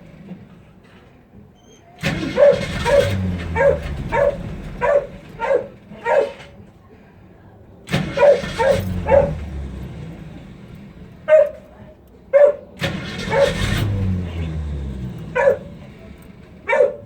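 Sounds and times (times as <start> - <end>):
engine cranking on starter: 0.0 - 7.0, 7.6 - 17.0
dog barking: 2.0 - 6.6, 8.0 - 9.5, 11.2 - 14.2, 15.2 - 15.9, 16.6 - 17.0.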